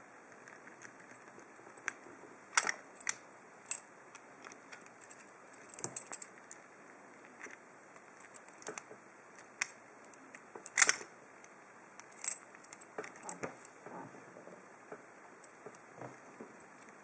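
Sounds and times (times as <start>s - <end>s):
lock pick metallic clicks and scrapes: 8.2s - 11.0s.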